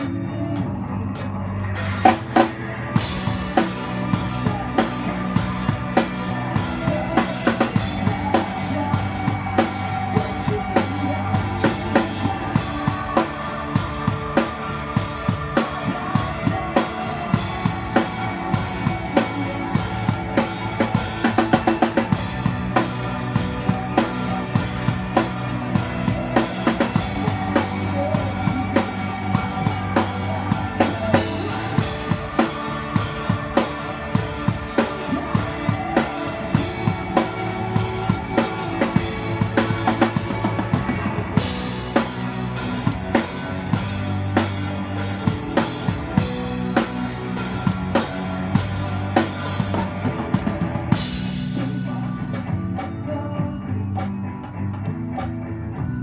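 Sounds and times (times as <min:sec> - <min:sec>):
drum kit beat: 0:00.0 - 0:56.0
live band music: 0:00.0 - 0:56.0.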